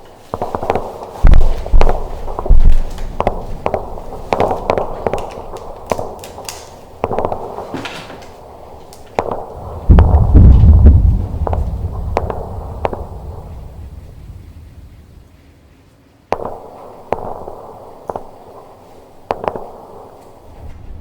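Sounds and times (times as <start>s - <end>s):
airsoft gunfire pops: 0.3s - 10.6s, 11.4s - 13.4s, 16.3s - 20.4s
heavy low thumps and rumbles: 9.6s - 15.3s.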